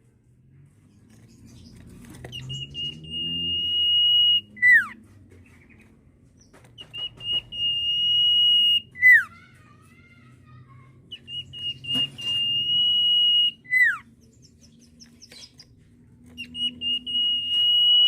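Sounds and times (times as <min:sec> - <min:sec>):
bird whistling call: 0:02.4 - 0:05.0, 0:06.8 - 0:09.3, 0:11.1 - 0:14.0, 0:16.4 - 0:18.0.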